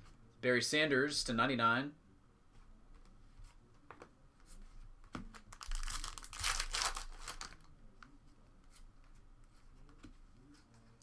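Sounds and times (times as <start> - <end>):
wrapper tearing and crinkling: 5.5 - 7.7.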